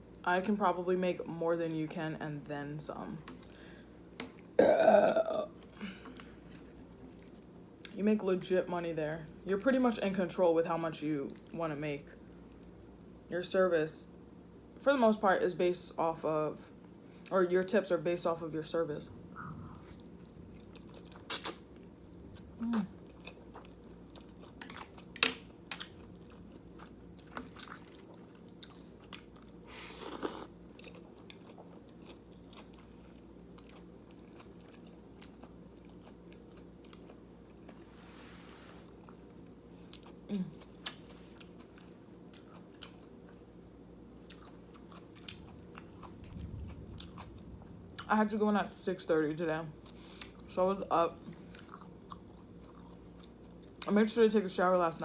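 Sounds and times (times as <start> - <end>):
faint steady hum: 0.0 - 55.0
chewing noodles: 19.4 - 37.8, 51.2 - 53.9
wet mouth clicks and smacks: 21.2 - 21.6.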